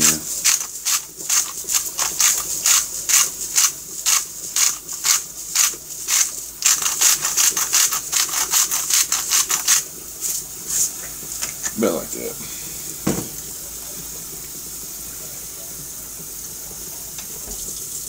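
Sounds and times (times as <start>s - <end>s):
salt grinder rasping: 0.0s - 11.0s.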